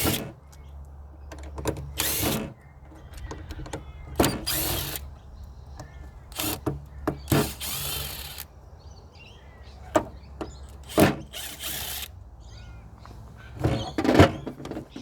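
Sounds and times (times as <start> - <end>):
power drill-driver bursts: 1.8 - 2.5, 4.2 - 5.1, 6.3 - 8.5, 10.8 - 12.1.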